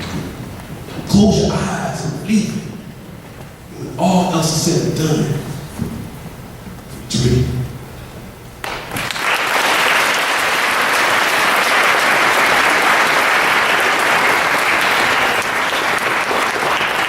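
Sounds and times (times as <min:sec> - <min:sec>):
large audience applauding: 0:08.6 - 0:17.0.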